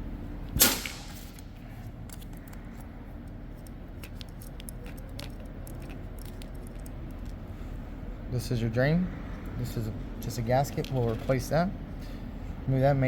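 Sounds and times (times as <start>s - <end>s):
small metal parts clicking: 1.1s - 7.4s.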